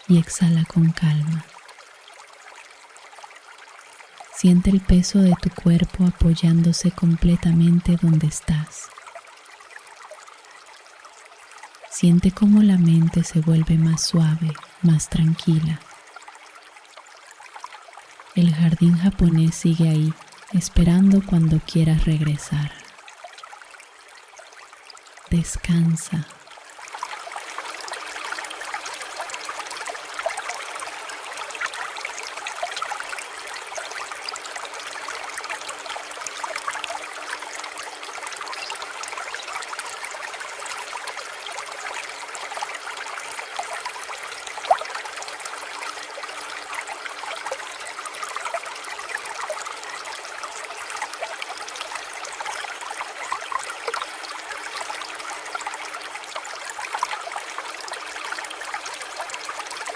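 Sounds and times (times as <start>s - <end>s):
water trickling: 0.0s - 59.9s
small splashes and drips: 26.3s - 59.9s.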